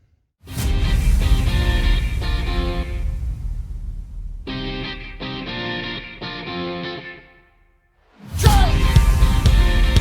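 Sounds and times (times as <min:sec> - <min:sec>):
heavy bass: 0:00.5 - 0:07.4, 0:08.4 - 0:10.0
guitar chords: 0:04.5 - 0:07.7, 0:08.5 - 0:10.0.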